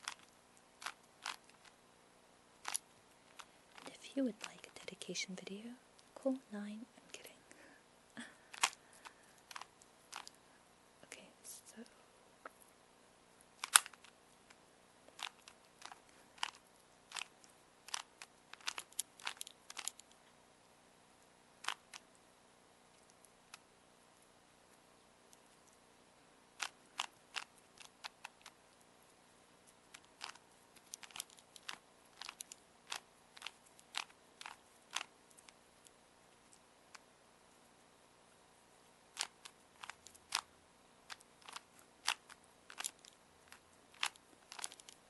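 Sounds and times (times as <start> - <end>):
puzzle cube clicking: 0.0 - 1.8, 8.5 - 10.4, 13.6 - 14.1, 15.1 - 20.2, 21.6 - 22.1, 26.6 - 28.6, 29.9 - 35.6, 39.1 - 40.5, 41.1 - 45.0.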